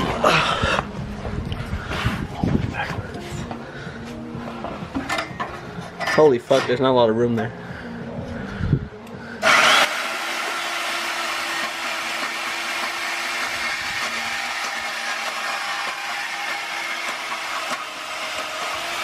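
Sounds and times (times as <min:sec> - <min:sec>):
power tool cutting steel pipe: 0:09.4 - 0:19.0.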